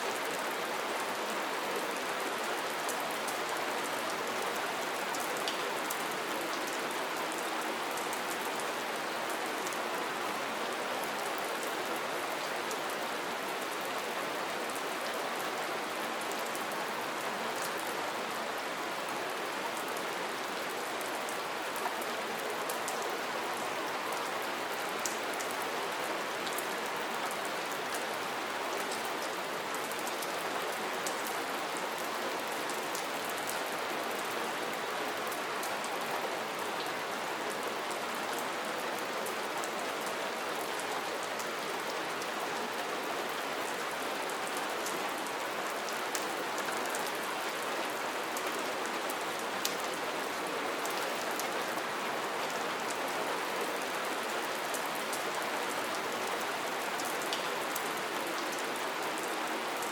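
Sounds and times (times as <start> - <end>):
soft rain falling: 0.0 - 59.9.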